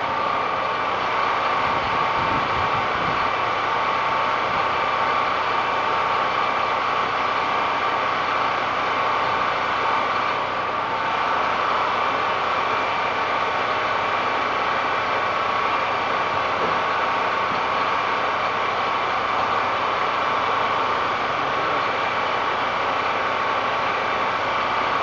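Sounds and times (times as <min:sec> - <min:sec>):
mechanical drone with high hum: 0:00.0 - 0:25.0.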